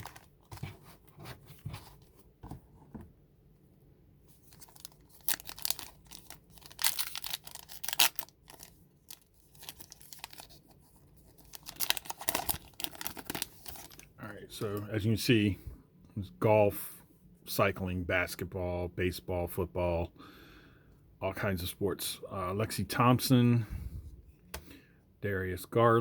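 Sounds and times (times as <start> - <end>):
card pack wrappers tearing: 0.0 - 0.5, 4.4 - 14.1.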